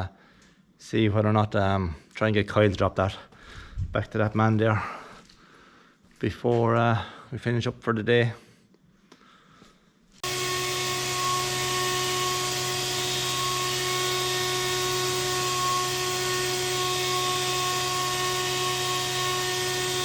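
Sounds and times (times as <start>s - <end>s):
machine humming steadily: 10.2s - 20.0s.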